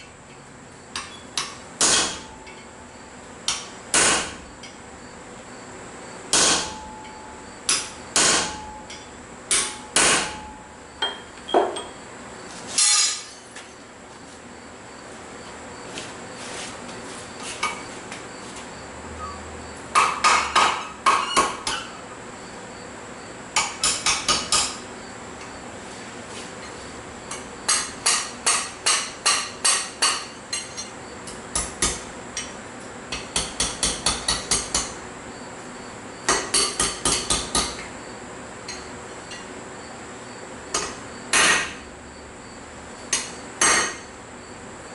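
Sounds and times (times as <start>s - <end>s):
hammer striking steel on anvil: 0.9s - 2.7s, 6.3s - 12.0s, 27.3s - 35.0s.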